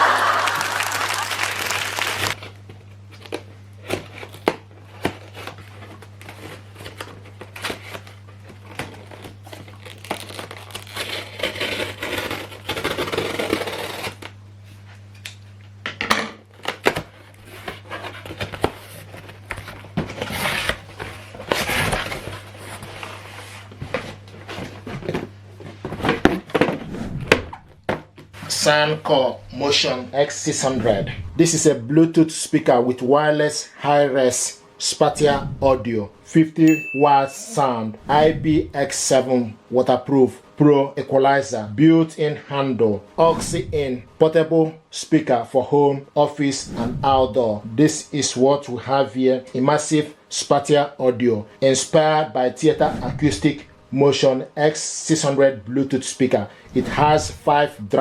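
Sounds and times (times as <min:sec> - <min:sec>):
packaging crinkling and tearing: 0:00.9 - 0:02.4, 0:03.2 - 0:14.4
low hum: 0:19.2 - 0:31.8, 0:35.2 - 0:38.8, 0:43.2 - 0:44.2, 0:46.5 - 0:47.4, 0:52.8 - 0:53.8.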